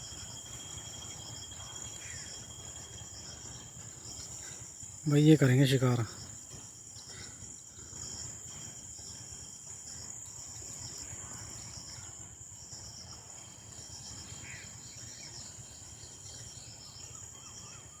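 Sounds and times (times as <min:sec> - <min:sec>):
insects chirping: 0:00.0 - 0:18.0.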